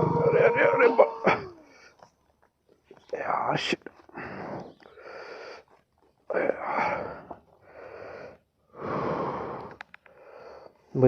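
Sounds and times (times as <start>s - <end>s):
man breathing hard: 4.1s - 5.7s, 6.3s - 10.9s.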